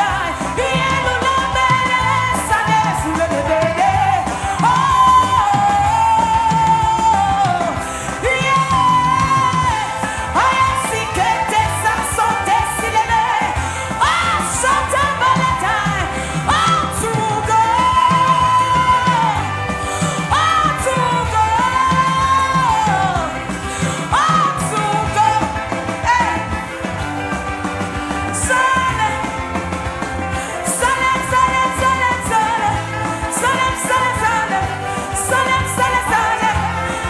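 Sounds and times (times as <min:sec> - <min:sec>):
worship band playing: 0:00.0 - 0:37.0.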